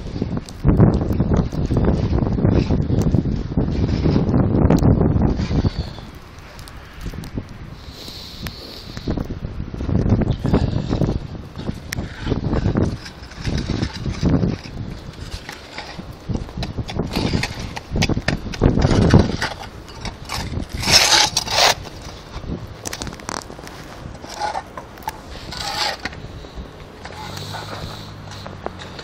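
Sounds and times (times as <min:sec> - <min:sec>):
wind buffeting microphone: 0:00.0 - 0:29.0
short scraping noises: 0:10.4 - 0:22.4, 0:23.0 - 0:29.0.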